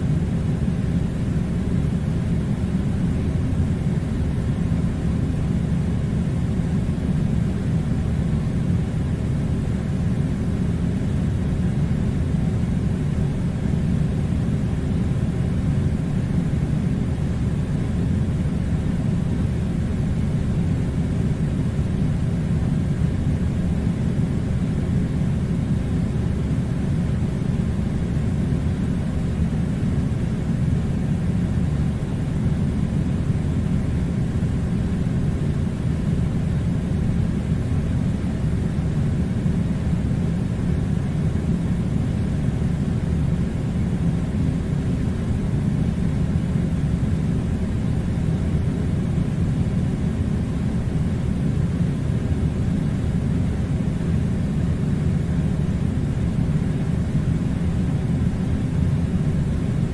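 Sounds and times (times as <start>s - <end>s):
air conditioner running: 0.0s - 59.9s.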